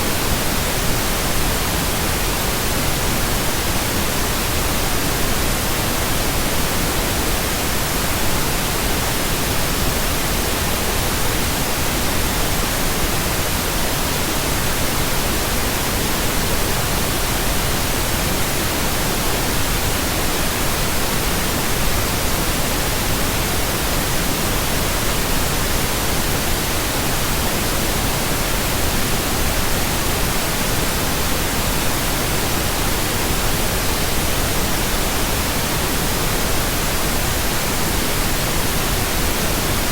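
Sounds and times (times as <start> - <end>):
pink noise hiss: 0.0 - 39.9.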